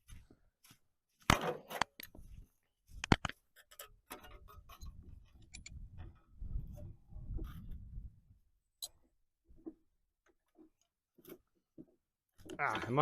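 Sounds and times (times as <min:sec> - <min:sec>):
clicks and scraping: 0:01.2 - 0:02.3, 0:02.9 - 0:07.9.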